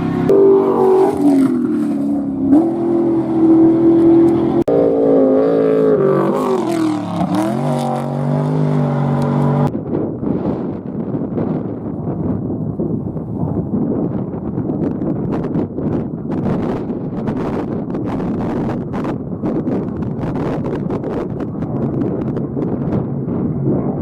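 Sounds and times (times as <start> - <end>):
race vehicle engines revving: 0.0 - 9.7
rough rushing noise: 0.0 - 11.3.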